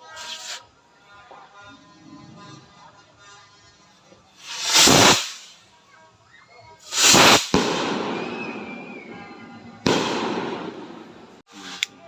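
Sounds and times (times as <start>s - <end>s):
skyrockets launching: 0.0s - 0.6s, 4.4s - 5.6s, 6.8s - 12.0s
firework bang: 4.4s - 5.5s, 6.8s - 11.4s.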